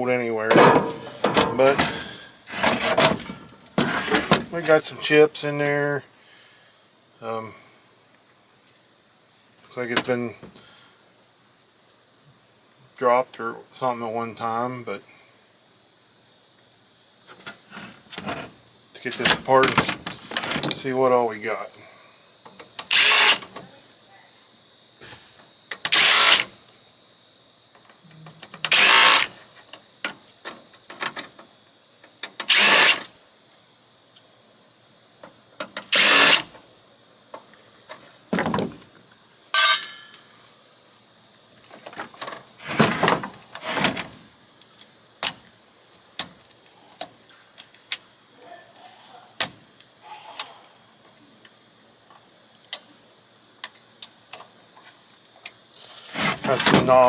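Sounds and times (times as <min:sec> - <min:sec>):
parts clicking and knocking: 0:00.5 - 0:05.0, 0:17.3 - 0:20.9, 0:22.5 - 0:23.6, 0:25.7 - 0:26.6, 0:28.4 - 0:31.4, 0:32.2 - 0:33.1, 0:35.6 - 0:36.6, 0:39.6 - 0:40.2
power drill bursts: 0:22.8 - 0:23.5, 0:25.8 - 0:26.5, 0:28.7 - 0:29.4, 0:32.5 - 0:33.1, 0:35.9 - 0:36.6, 0:39.6 - 0:39.8.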